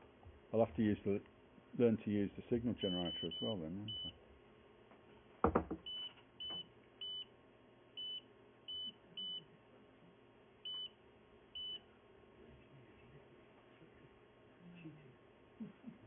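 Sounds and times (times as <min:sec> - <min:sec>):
knock: 0:05.4 - 0:05.8.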